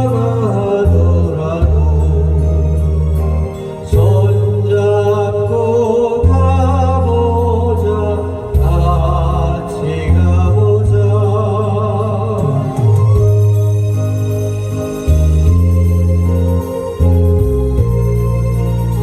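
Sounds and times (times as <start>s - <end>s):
pop song singing: 0.0s - 13.5s
bass line: 0.0s - 19.0s.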